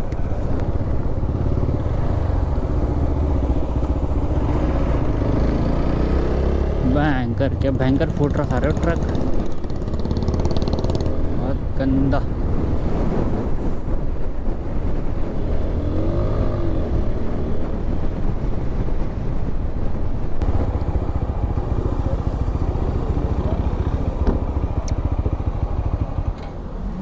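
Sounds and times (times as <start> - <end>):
wind rumble on microphone: 0.0 - 27.0
motorcycle engine running: 7.6 - 11.3, 20.4 - 27.0.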